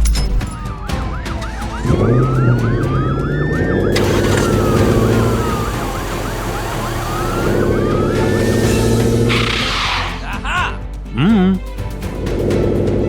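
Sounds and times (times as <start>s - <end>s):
emergency sirens yelping and wailing: 0.6s - 10.4s
vehicle engine running: 1.4s - 9.9s, 11.9s - 13.0s.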